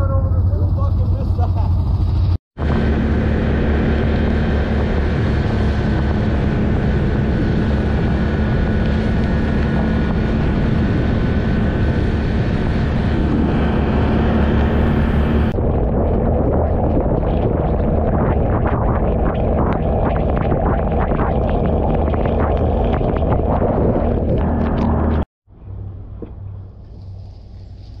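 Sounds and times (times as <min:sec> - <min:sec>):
atv engine running: 0:00.0 - 0:15.6, 0:18.7 - 0:25.2.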